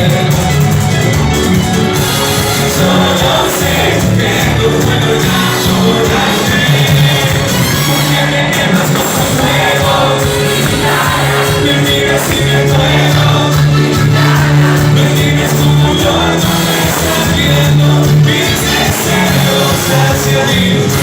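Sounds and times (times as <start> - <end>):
cumbia band playing: 0.0 - 21.0.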